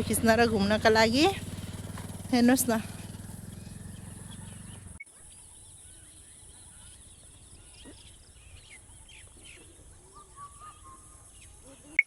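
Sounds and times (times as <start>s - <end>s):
low rumble: 0.0s - 5.0s
small birds chirping: 0.0s - 12.0s.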